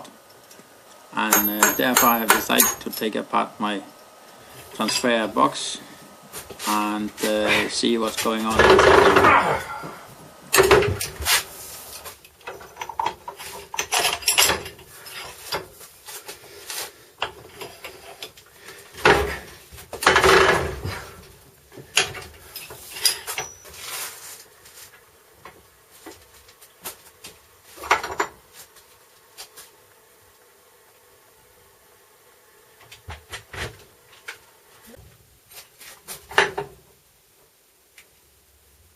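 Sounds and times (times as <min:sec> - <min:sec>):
tools knocking and clanking: 0:01.2 - 0:03.1.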